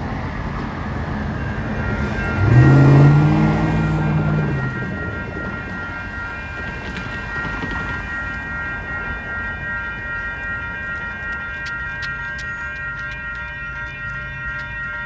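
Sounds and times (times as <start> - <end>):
high-pitched train squeal: 0.0 - 9.6
train rumbling past: 0.0 - 15.0.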